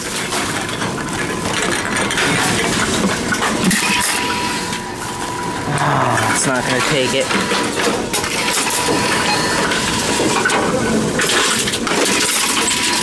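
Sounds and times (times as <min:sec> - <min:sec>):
thin steady tone: 0:03.9 - 0:07.7
machine crunching plastic bottle: 0:07.1 - 0:13.0.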